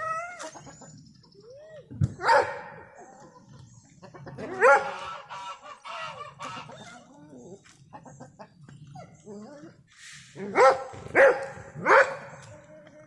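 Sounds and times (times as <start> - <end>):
geese honking: 4.1 - 7.1.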